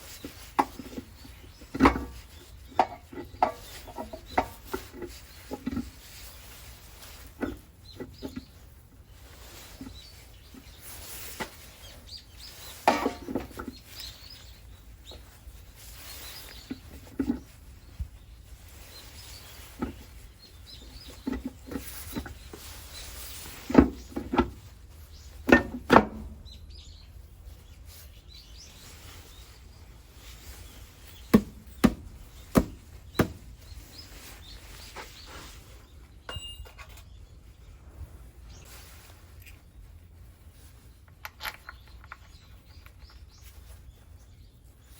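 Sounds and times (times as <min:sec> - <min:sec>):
high ringing tone: 0:36.3 - 0:37.0
tools and metal parts clinking: 0:36.3 - 0:37.1, 0:41.0 - 0:43.3.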